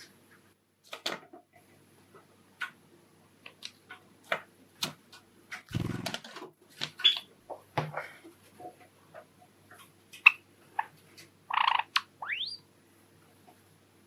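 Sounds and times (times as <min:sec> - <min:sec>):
sparrows calling: 0:11.5 - 0:12.6
upward-sweeping bird call: 0:11.5 - 0:12.6.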